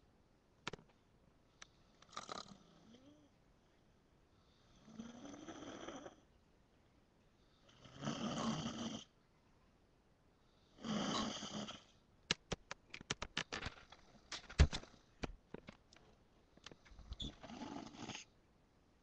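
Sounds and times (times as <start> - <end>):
sharp irregular clicks and taps: 0.6 - 1.0, 12.3 - 16.0
woman snoring: 2.1 - 3.3, 4.6 - 6.2, 7.6 - 9.1, 10.8 - 11.9, 17.3 - 18.3.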